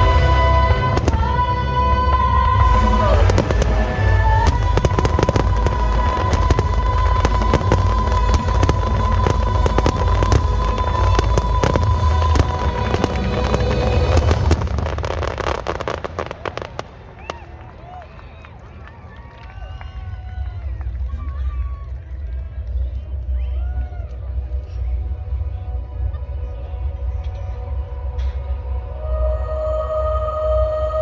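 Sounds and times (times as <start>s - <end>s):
fireworks crackling and booming: 0.0s - 17.7s.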